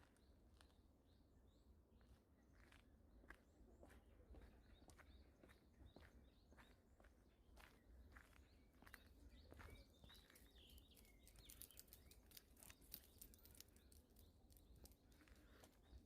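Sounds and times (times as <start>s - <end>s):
soft footsteps on a path: 0.0s - 16.0s
faint bird chirps: 3.8s - 16.0s.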